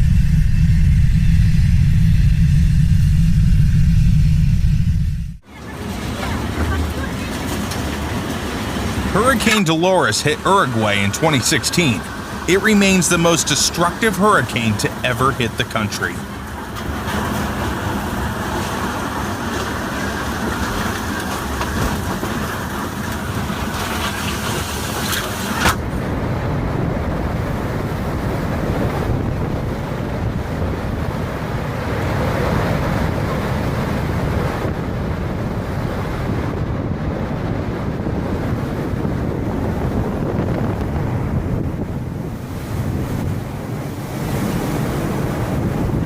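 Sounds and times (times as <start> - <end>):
strong wind buffeting microphone: 16.5 - 46.0.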